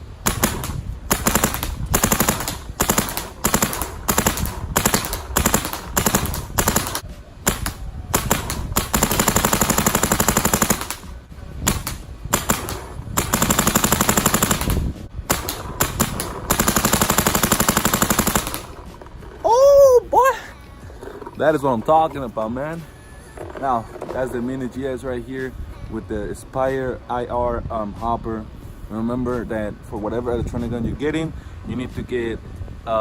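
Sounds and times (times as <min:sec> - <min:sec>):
paintball marker firing: 0:00.2 - 0:19.3.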